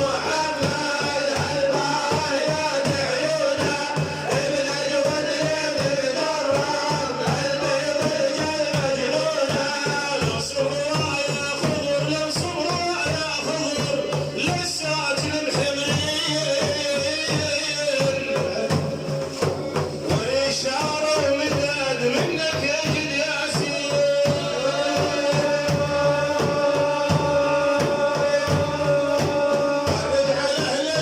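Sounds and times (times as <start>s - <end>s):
person chanting: 0.0s - 18.8s, 19.6s - 31.0s
hand drum rhythm: 0.0s - 31.0s.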